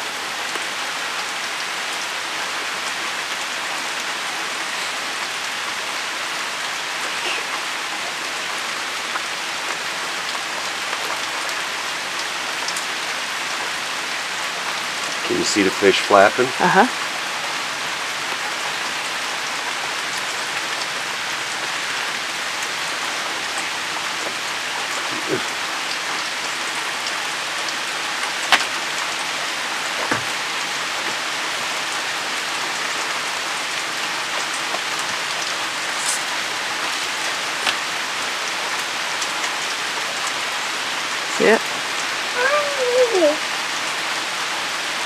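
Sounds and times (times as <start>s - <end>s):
steady rain falling: 0.0s - 45.0s
soft knocks: 30.0s - 30.4s.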